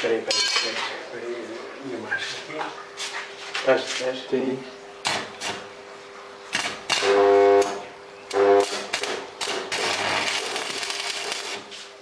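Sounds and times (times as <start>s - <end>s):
welding arc buzz: 5.0s - 5.7s, 6.5s - 12.0s
welding arc crackling hiss: 5.0s - 5.7s, 6.5s - 12.0s.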